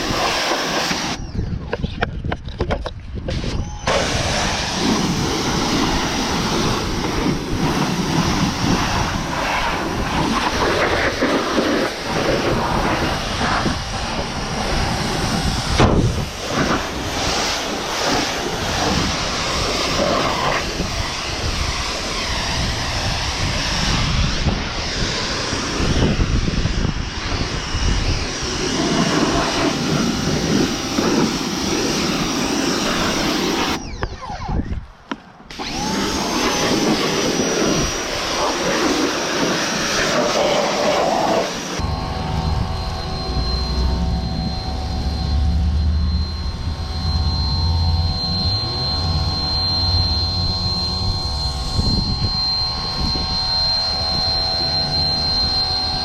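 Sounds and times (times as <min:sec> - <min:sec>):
pressure washer spraying: 0:00.0 - 0:01.2, 0:03.4 - 0:23.9, 0:28.3 - 0:33.8, 0:35.5 - 0:44.1.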